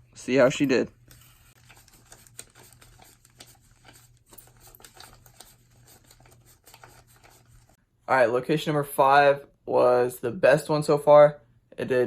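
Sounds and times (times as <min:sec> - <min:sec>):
paper bills rustling: 0:00.7 - 0:07.8.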